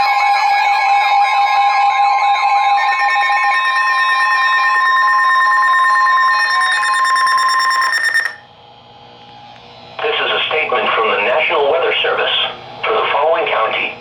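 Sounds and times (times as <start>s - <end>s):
pulsing electronic alert tones: 1.9s - 8.4s.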